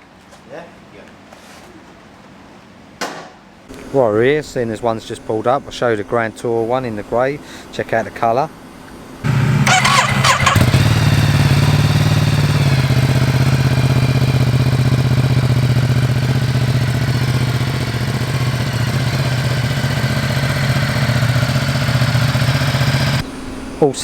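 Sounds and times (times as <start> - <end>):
motorcycle engine idling: 9.2 - 23.2.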